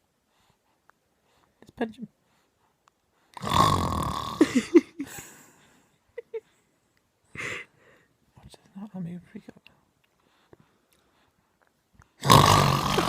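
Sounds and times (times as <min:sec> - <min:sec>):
man snoring: 0:03.4 - 0:04.8, 0:12.2 - 0:13.0.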